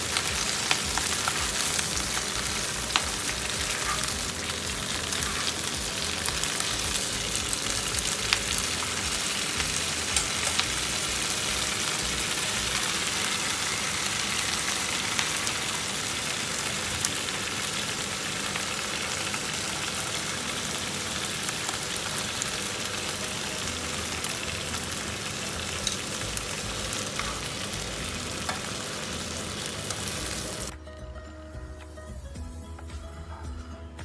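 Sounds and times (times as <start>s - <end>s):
vegetables sizzling in oil: 0.0s - 30.7s.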